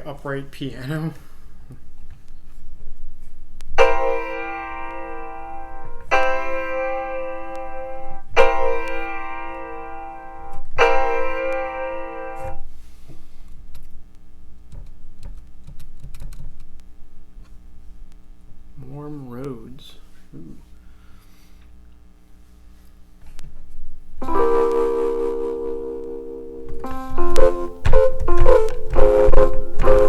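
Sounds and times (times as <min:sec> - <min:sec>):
piano chords: 0:03.8 - 0:12.7, 0:24.2 - 0:30.0.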